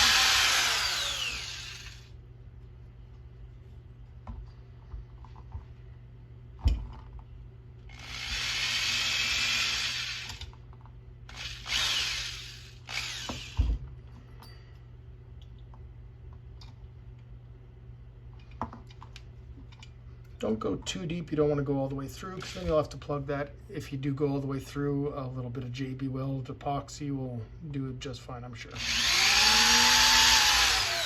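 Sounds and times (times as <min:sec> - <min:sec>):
power drill boring into plastic: 0:00.0 - 0:02.1, 0:08.0 - 0:10.4, 0:11.3 - 0:13.6, 0:28.8 - 0:31.0.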